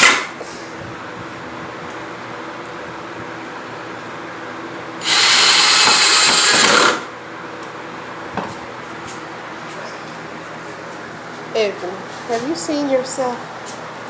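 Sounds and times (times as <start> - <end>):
power drill running: 5.0 - 7.1.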